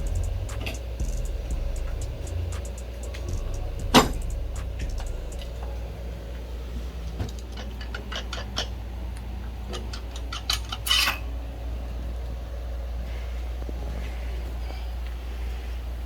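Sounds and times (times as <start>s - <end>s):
low hum: 0.0s - 7.0s.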